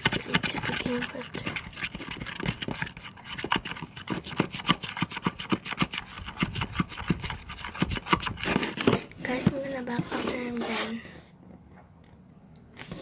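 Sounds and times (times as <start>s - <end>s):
slime squelching: 0.0s - 11.0s.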